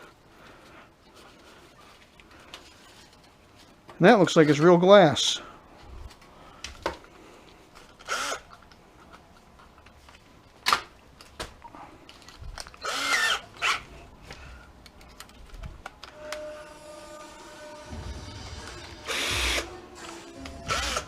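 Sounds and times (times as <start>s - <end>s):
scraping or tool running: 16.0s - 21.0s.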